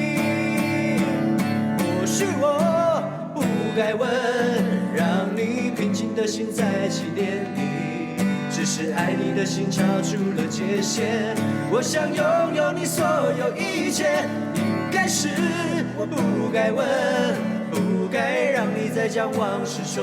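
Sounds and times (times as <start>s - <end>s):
man singing a slow ballad: 0.0s - 20.0s
strummed acoustic guitar: 0.0s - 20.0s.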